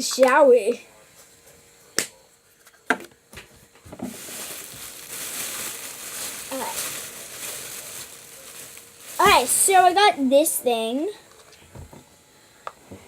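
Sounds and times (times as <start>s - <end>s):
plastic packaging crinkling: 4.0s - 10.1s.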